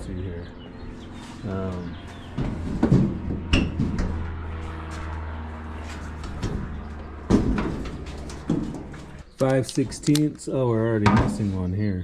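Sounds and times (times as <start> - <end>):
steady low hum: 0.0 - 12.0
metal knocks and clatter: 2.1 - 4.4, 6.1 - 9.2.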